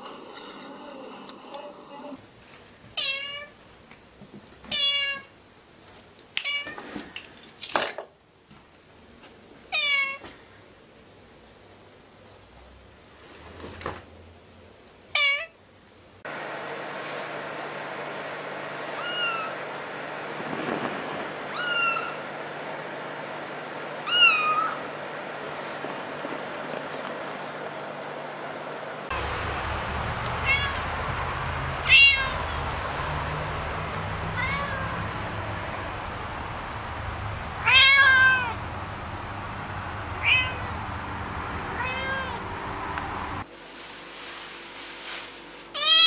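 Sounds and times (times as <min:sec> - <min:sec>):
cat meowing: 0:19.0 - 0:19.6, 0:21.5 - 0:22.2, 0:24.0 - 0:24.8, 0:30.3 - 0:31.0, 0:31.8 - 0:32.6, 0:33.4 - 0:36.0, 0:37.6 - 0:38.6, 0:40.2 - 0:40.8, 0:41.8 - 0:42.4, 0:45.8 - 0:46.0.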